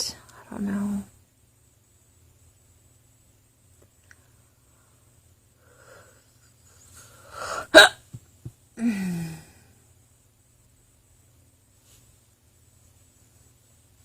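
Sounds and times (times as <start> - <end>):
soft breathing: 4.2 - 7.7
woman hiccuping: 7.6 - 8.2.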